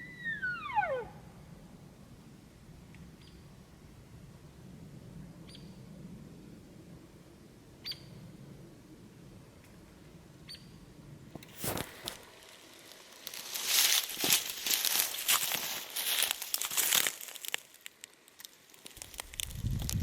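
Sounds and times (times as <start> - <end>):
high-pitched animal chirps: 0.0 - 1.1
rustling: 11.4 - 20.0.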